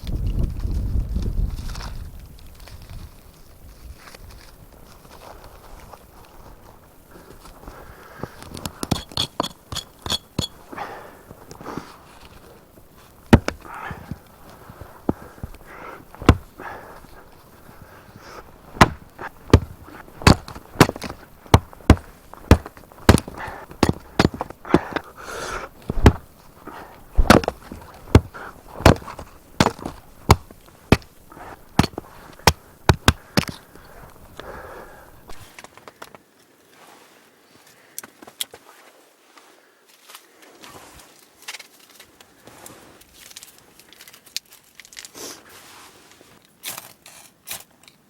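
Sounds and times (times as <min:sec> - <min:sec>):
sharp chopping strikes: 0:13.3 - 0:14.1, 0:16.2 - 0:16.5, 0:18.7 - 0:33.5.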